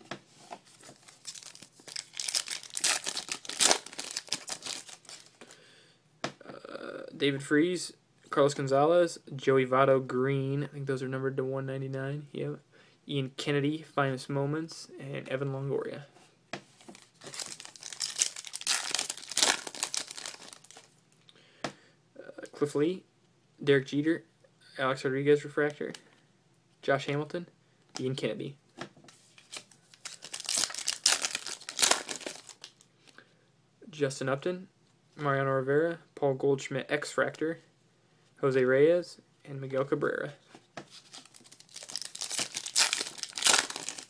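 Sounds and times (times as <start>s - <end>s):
wrapper tearing and crinkling: 0.9s - 5.4s, 17.0s - 20.9s, 29.4s - 32.8s, 40.9s - 44.0s.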